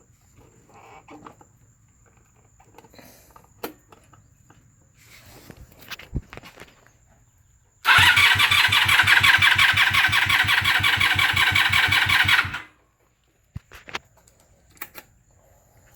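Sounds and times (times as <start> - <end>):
motorcycle engine cranking: 7.9 - 12.7.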